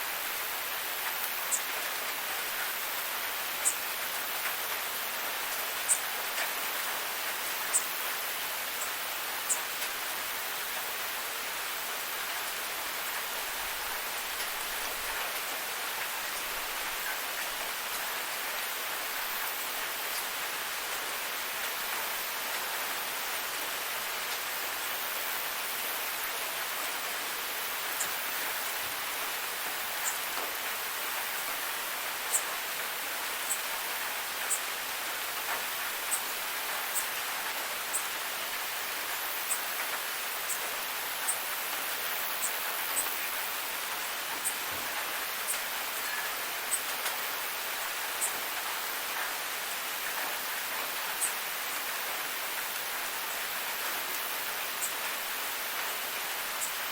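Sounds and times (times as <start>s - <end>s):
steady rain falling: 0.0s - 56.9s
insect chirping: 5.7s - 6.1s, 7.4s - 8.0s, 32.3s - 32.6s, 33.4s - 34.8s, 39.3s - 48.9s, 51.1s - 51.8s, 54.6s - 55.1s.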